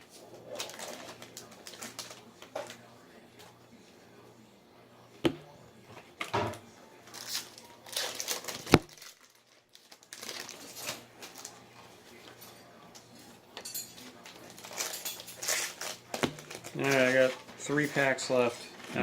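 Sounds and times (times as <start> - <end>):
card pack wrappers crinkling: 0.4 - 2.8, 7.1 - 11.6, 14.2 - 19.0.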